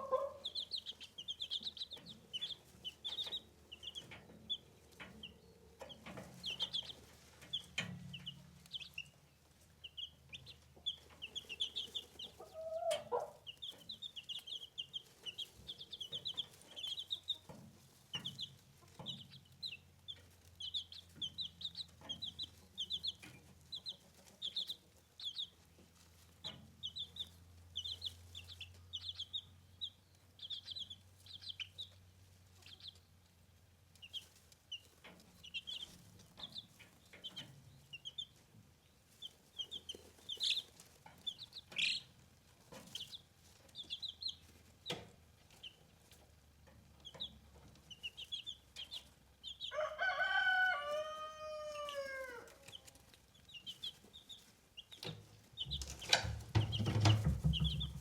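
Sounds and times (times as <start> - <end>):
chicks peeping: 0.0 - 58.0
soft knocks: 55.7 - 58.0.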